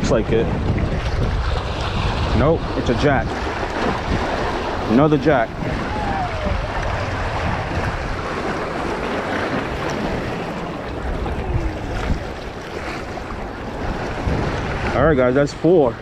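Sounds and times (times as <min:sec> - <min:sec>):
surf washing on beach: 0:00.0 - 0:16.0
wind buffeting microphone: 0:00.0 - 0:16.0.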